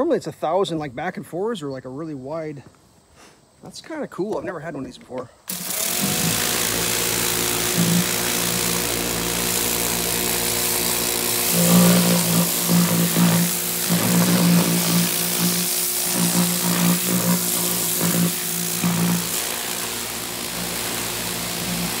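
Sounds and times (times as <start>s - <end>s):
pressure washer motor and pump hum: 5.5s - 22.0s
water spray hissing: 5.5s - 22.0s.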